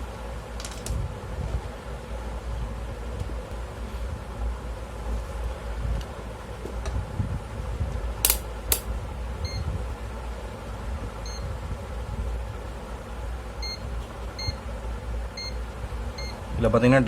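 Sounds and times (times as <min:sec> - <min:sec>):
sharp clicks: 0:08.2 - 0:08.9.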